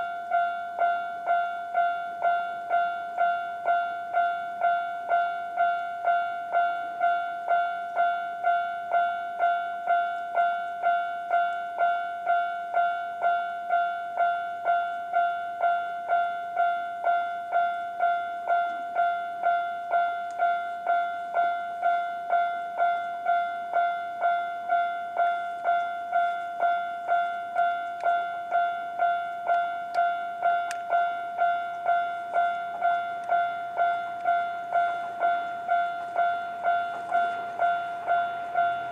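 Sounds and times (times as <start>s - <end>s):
level crossing warning bell: 0.0s - 38.9s.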